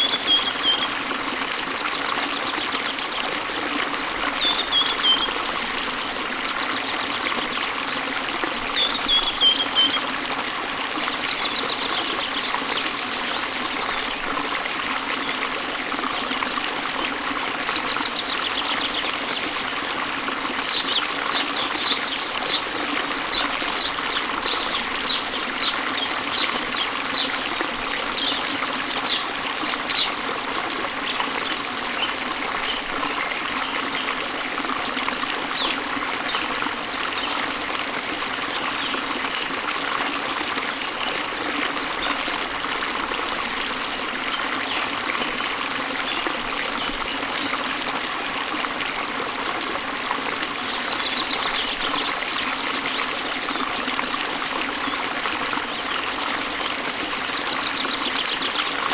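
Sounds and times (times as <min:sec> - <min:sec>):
waterfall running water: 0:00.0 - 0:58.9.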